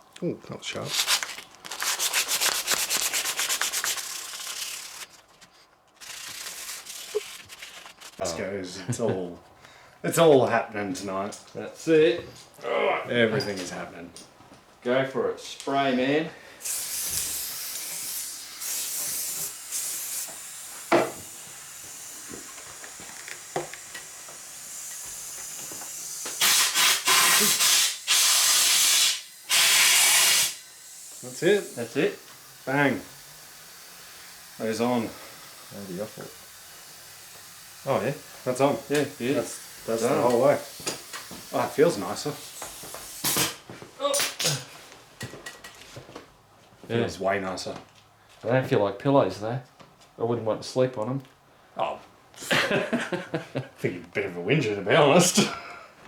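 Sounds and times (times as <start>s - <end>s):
scrubbing on a handlebar: 0.9s - 8.3s
aerosol spray hissing: 16.6s - 43.6s
compressed air blasts: 16.6s - 43.7s.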